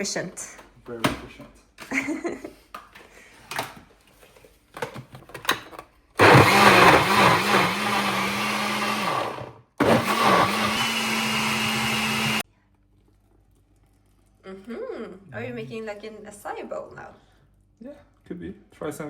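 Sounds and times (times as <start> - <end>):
blender motor running: 6.2 - 12.4.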